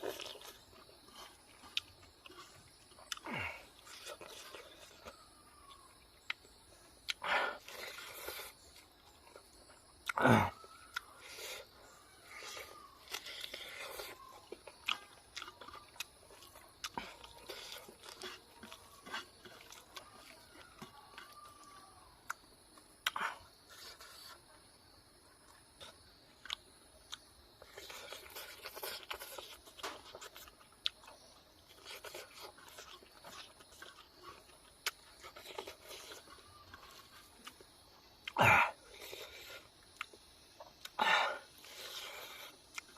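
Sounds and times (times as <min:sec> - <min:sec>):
chewing and crunching food: 0:00.0 - 0:42.9.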